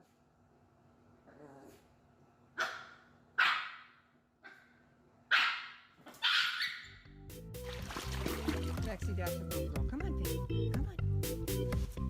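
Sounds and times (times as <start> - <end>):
dog barking: 2.6 - 6.9.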